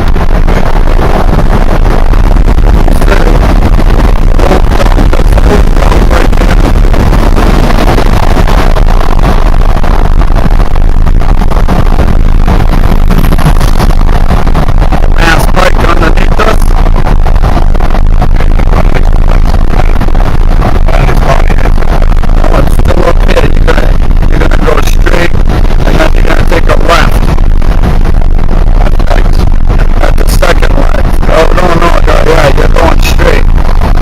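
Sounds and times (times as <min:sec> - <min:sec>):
road and wind rumble: 0:00.0 - 0:34.0.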